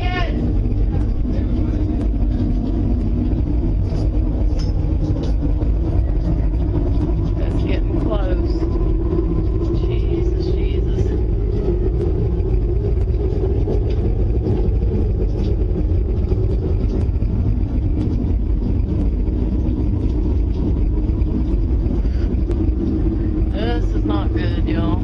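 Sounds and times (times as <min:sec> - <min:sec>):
low rumbling drone: 0:00.0 - 0:25.0.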